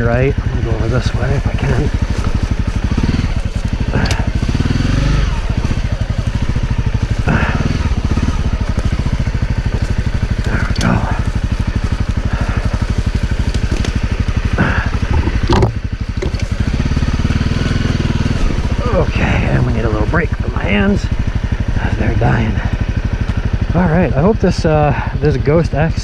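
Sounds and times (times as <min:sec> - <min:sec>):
motorcycle engine chugging: 0:00.0 - 0:26.0.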